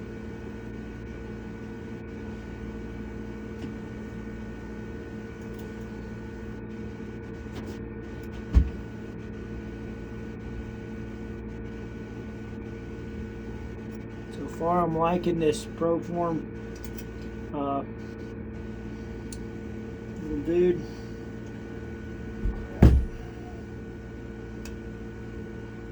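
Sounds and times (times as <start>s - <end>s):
steady machine hum: 0.0s - 25.9s
low dull thump: 22.4s - 23.4s.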